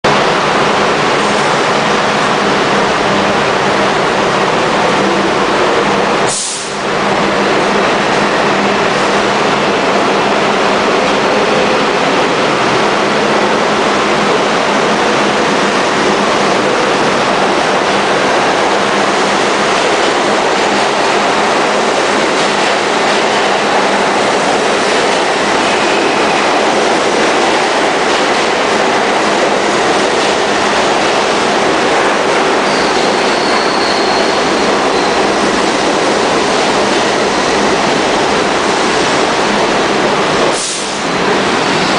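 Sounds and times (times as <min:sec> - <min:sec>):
subway train wheels rushing on rails: 0:00.0 - 0:41.9
high wheel squeal: 0:32.6 - 0:35.4.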